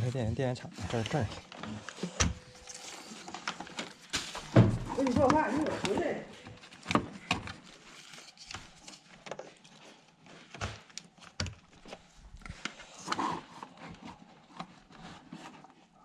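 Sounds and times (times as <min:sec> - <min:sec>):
handling clicks and knocks: 0:04.7 - 0:07.6.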